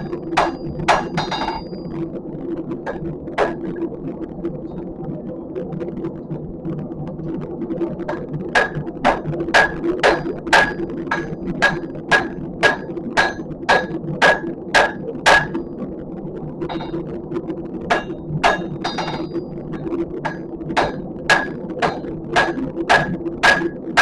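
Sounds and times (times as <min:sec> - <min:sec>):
hammer striking horseshoe on anvil: 0:00.0 - 0:01.8, 0:02.9 - 0:03.6, 0:08.1 - 0:15.6, 0:16.7 - 0:17.0, 0:17.9 - 0:19.4, 0:20.2 - 0:24.0.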